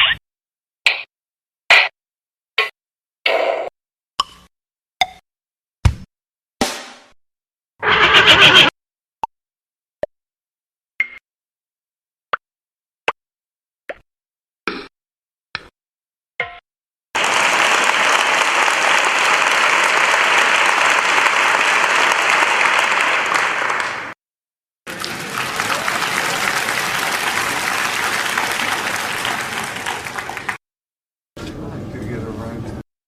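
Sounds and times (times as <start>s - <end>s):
applause: 17.2s - 24.2s, 24.9s - 30.6s.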